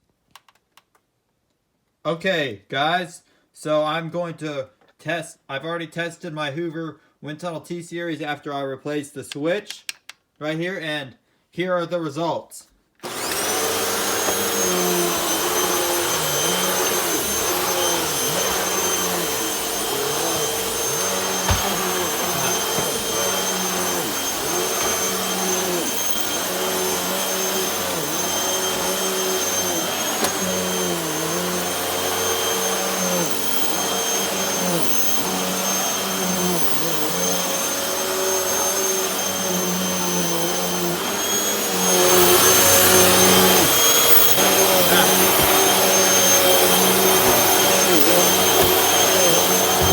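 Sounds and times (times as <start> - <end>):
upright vacuum cleaner running: 13.0 - 49.9.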